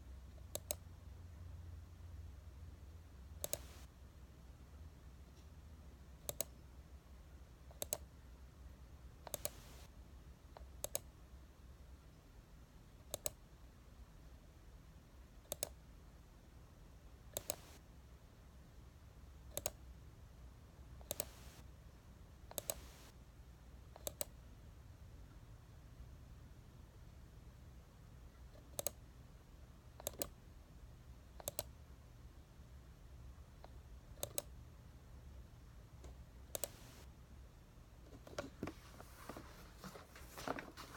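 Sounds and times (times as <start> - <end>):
low steady hum: 0.0 - 40.9
sharp clicks in pairs: 3.4 - 3.9, 17.4 - 17.8, 21.0 - 21.6, 22.5 - 23.1, 30.0 - 30.4, 31.4 - 31.7, 36.0 - 37.1.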